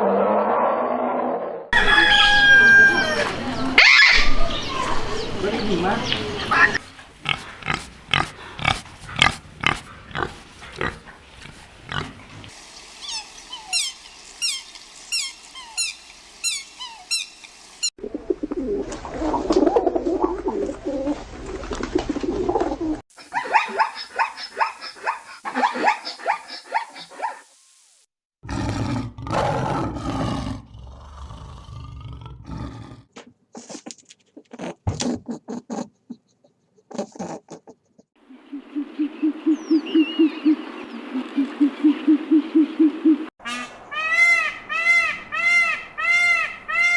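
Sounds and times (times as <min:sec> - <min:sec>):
low animal grunts: 0:28.4 - 0:33.1.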